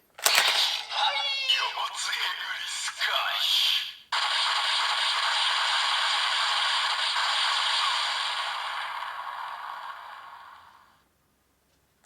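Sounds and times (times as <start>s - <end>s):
hissing from toy speaker: 4.2s - 10.9s.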